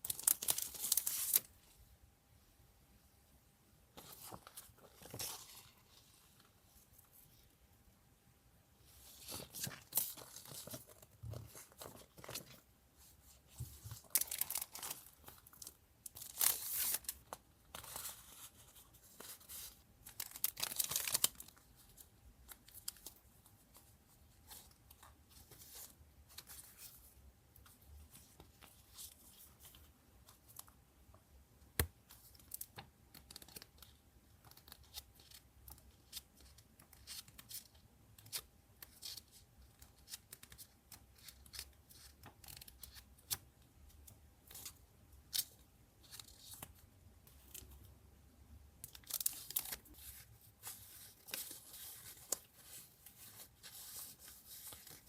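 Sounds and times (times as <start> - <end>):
paper rustling: 9.0 - 30.7.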